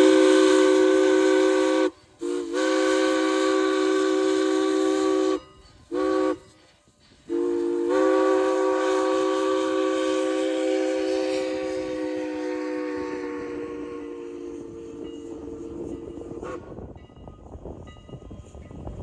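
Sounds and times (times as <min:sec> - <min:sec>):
chime steam whistle: 0:00.0 - 0:19.0
steam hissing: 0:00.0 - 0:19.0.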